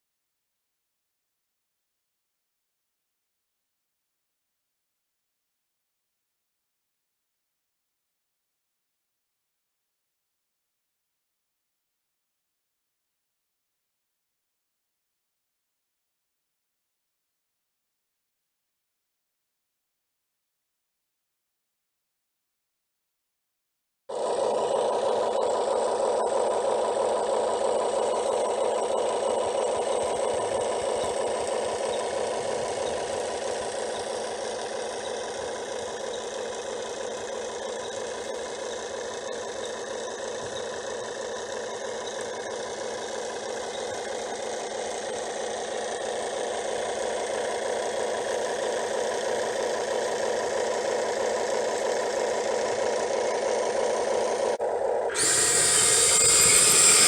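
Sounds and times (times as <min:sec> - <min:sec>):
simulated diesel engine idling: 0:24.1 - 0:57.0.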